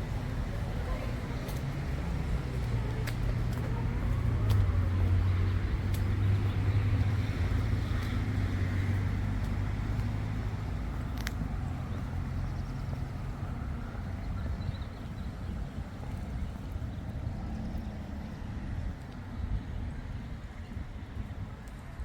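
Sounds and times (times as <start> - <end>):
vehicle engine humming: 0.0 - 21.6
faint clicks: 0.1 - 8.2, 10.9 - 12.5.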